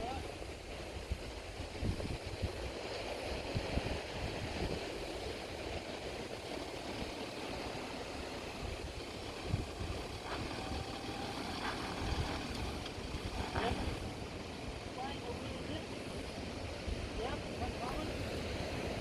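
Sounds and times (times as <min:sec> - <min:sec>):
creek water flowing: 0:02.4 - 0:19.0
vehicle engine running low: 0:03.9 - 0:19.0.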